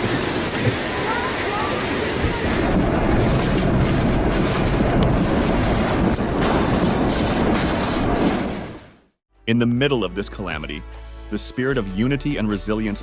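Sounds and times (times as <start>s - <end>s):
rushing sea water: 0.0s - 9.0s
storm wind on microphone: 0.0s - 9.0s.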